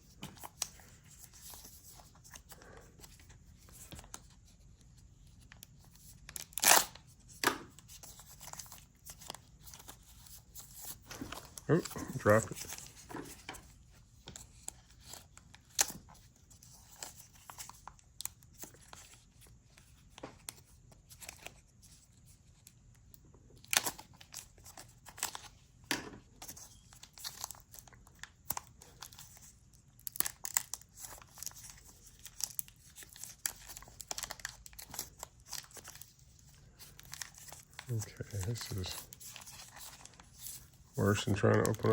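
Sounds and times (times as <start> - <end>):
plastic packaging crinkling: 8.0 - 13.7, 26.4 - 41.9.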